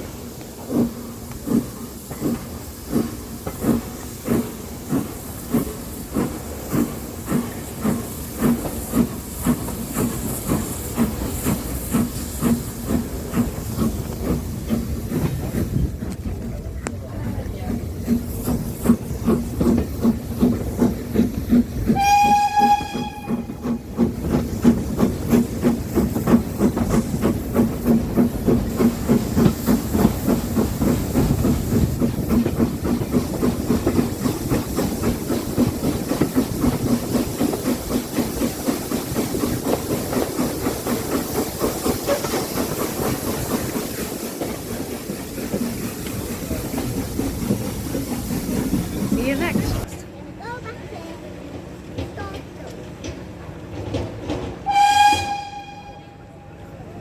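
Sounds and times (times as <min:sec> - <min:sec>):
steam locomotive chuffing and hissing: 0:00.0 - 0:57.0
steam locomotive whistle: 0:21.9 - 0:23.8, 0:54.6 - 0:56.4.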